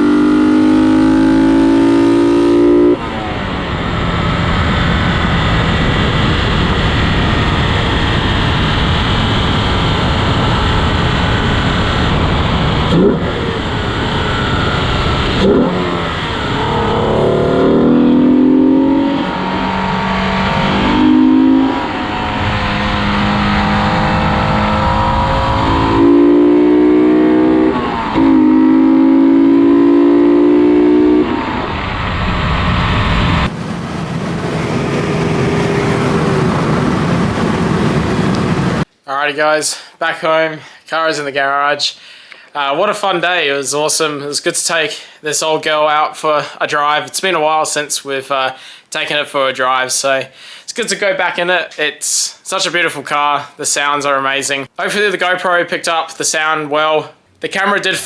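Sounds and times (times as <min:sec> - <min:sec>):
car engine accelerating: 0:00.0 - 0:38.9.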